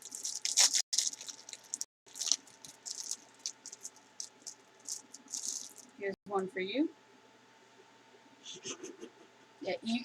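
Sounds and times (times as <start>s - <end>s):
snack wrapper crinkling: 0.0s - 5.9s.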